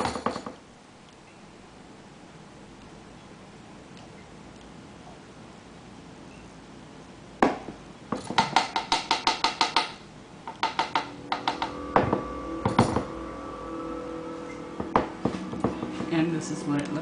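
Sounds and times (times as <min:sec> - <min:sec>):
heavy knocks: 0:07.4 - 0:13.3, 0:14.8 - 0:16.2.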